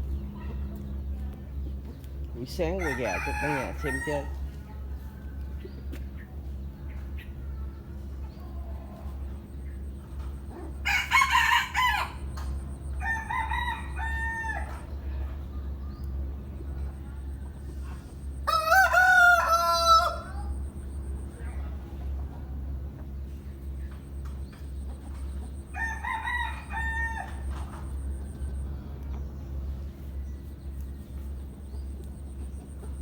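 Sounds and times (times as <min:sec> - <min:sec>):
roosters crowing: 0:02.4 - 0:05.0, 0:10.4 - 0:15.1, 0:17.7 - 0:21.0, 0:24.4 - 0:28.6.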